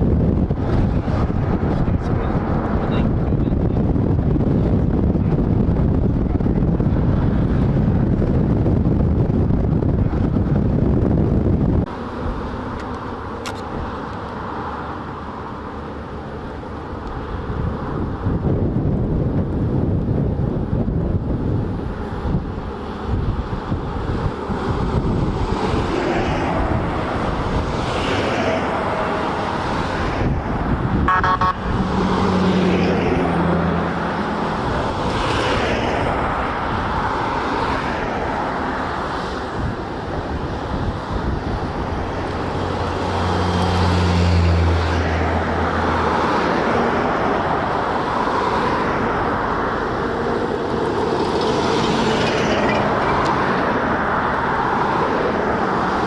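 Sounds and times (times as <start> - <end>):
road vehicles passing: 0.0 - 56.0
low held tone: 31.1 - 31.8.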